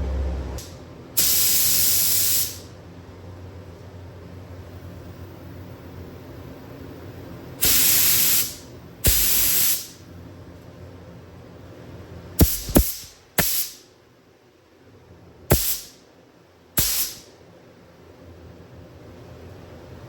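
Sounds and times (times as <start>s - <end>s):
spray gun hissing bursts: 1.2s - 2.7s, 7.6s - 10.0s, 12.4s - 13.8s, 15.5s - 15.9s, 16.8s - 17.2s.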